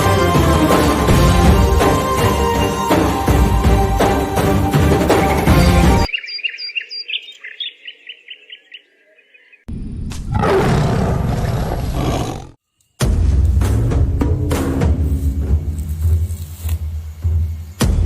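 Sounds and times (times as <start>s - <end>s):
music: 0.0s - 6.1s, 13.0s - 18.0s
bird chirping: 6.1s - 9.7s.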